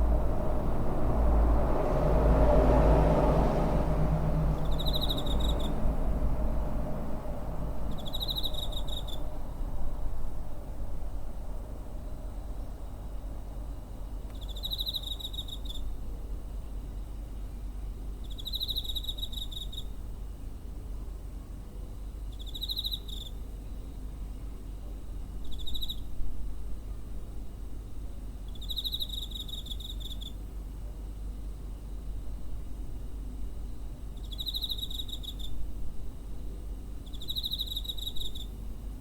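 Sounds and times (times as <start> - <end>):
cricket chirping: 0.0 - 10.0, 12.0 - 16.0, 18.0 - 20.1, 22.2 - 23.9, 25.2 - 26.2, 28.3 - 30.5, 33.6 - 39.0
low background rumble: 0.0 - 18.3.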